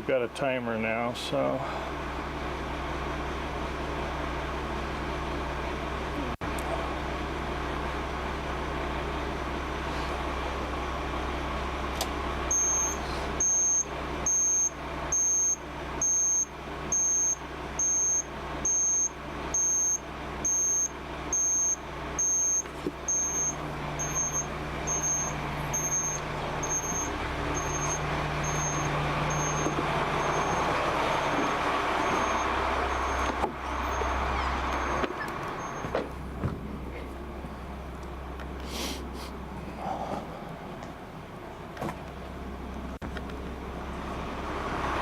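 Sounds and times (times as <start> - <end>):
engine running: 0.0 - 45.0
turn signal beeping: 12.5 - 36.1.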